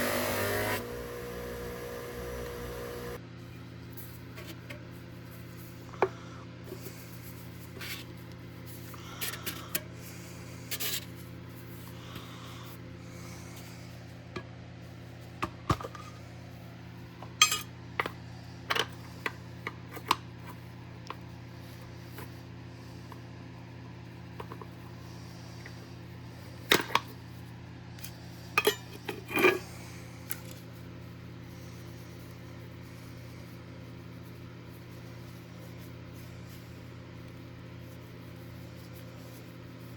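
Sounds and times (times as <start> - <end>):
steady low hum: 0.0 - 39.9
metal objects clicking and scraping: 17.4 - 19.4.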